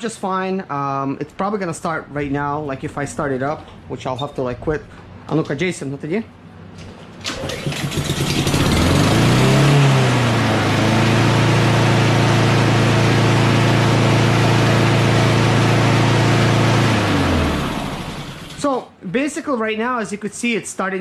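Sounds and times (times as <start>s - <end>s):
lawn mower engine running: 7.2s - 18.6s.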